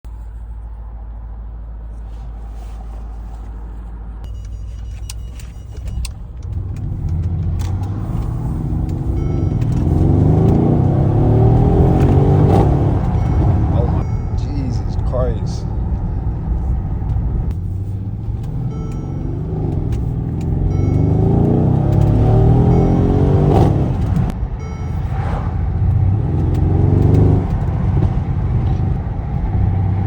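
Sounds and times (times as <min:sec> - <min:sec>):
car engine revving: 0:06.6 - 0:30.0.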